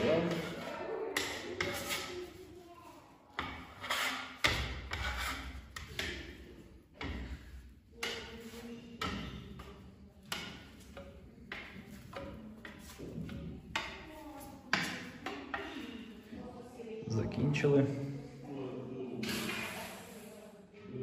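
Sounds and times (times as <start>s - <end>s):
trowel scraping plaster: 0.0s - 16.1s.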